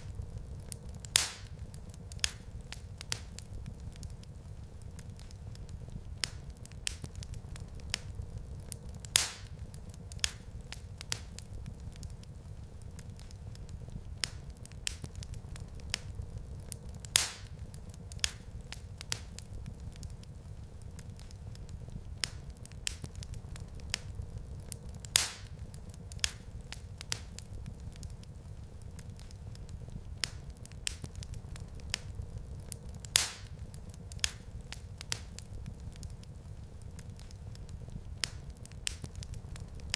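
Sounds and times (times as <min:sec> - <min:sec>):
wood fire crackling: 0:00.0 - 0:39.9
loud fire pop: 0:01.1 - 0:01.6, 0:09.2 - 0:09.5, 0:17.2 - 0:17.5, 0:33.2 - 0:33.5.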